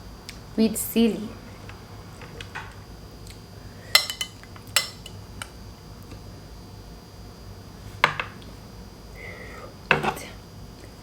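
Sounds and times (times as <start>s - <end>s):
utensils clinking against dishes: 3.9s - 5.2s.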